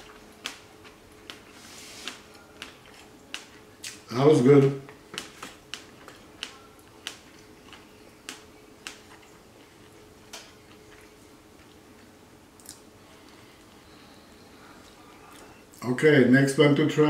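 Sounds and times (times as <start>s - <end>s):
mouth clicks and smacks chewing: 0.0s - 4.1s, 5.2s - 11.8s
faint steady hum: 0.0s - 17.0s.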